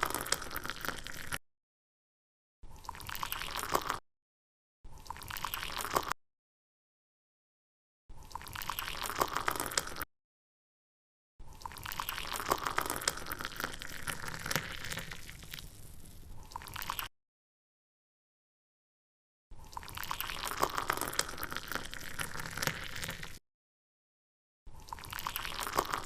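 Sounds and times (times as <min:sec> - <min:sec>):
slime squelching and crackling: 0:00.0 - 0:01.4, 0:02.7 - 0:04.0, 0:04.9 - 0:06.2, 0:08.2 - 0:10.1, 0:11.5 - 0:17.1, 0:19.6 - 0:23.4, 0:24.7 - 0:26.0.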